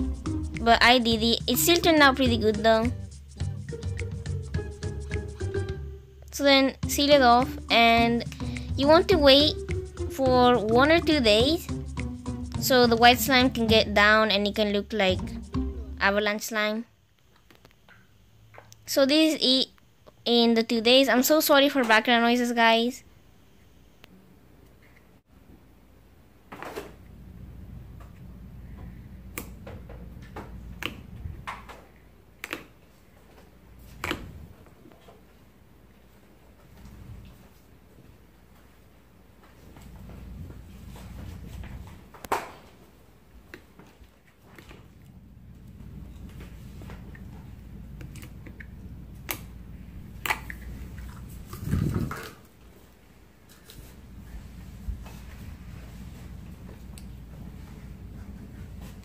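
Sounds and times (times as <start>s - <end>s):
low background hum: 0.0s - 59.0s.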